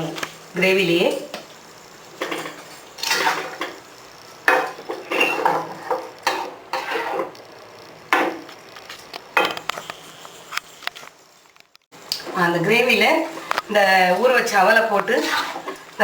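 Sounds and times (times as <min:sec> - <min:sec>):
spoon scraping a cooking pan: 0:04.4 - 0:07.4, 0:14.9 - 0:15.9.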